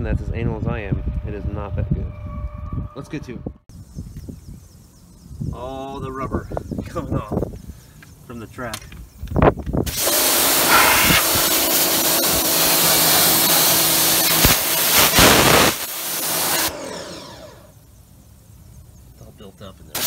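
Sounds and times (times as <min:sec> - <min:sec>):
pressure washer spraying: 0:09.9 - 0:16.7
motor hum: 0:16.6 - 0:17.8.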